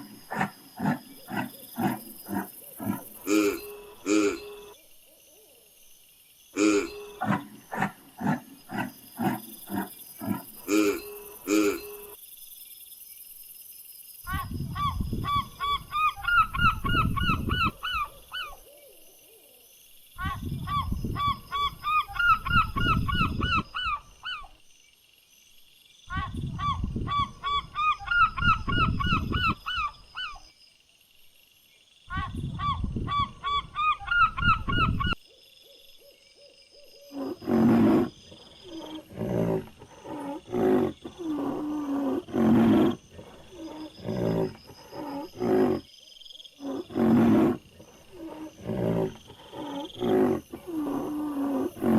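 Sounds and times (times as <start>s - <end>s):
low rough animal call: 0.0s - 4.8s, 6.6s - 12.2s, 37.0s - 45.9s, 46.6s - 51.9s.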